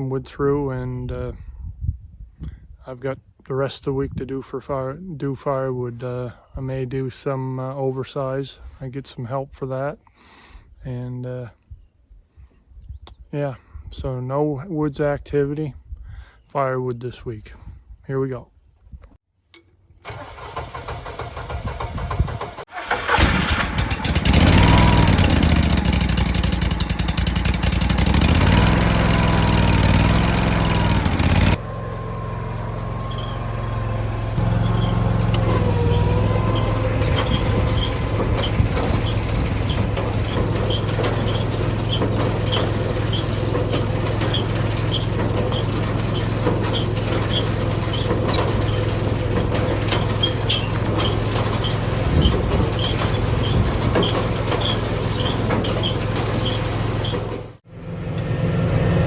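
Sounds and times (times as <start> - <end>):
engine running: 20.0 - 59.0.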